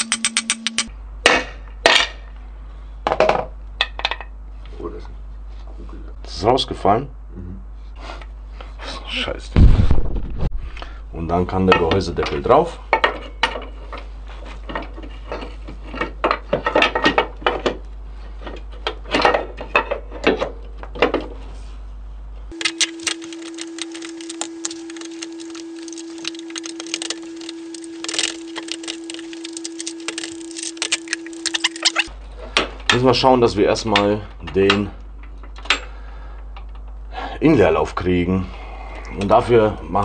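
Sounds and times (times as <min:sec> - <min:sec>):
metal parts clinking: 0:00.0 - 0:00.9
steady tone: 0:00.0 - 0:00.9.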